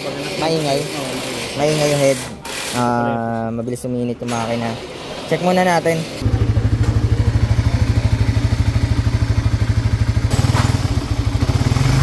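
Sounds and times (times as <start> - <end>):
motorcycle engine idling: 6.2 - 11.8.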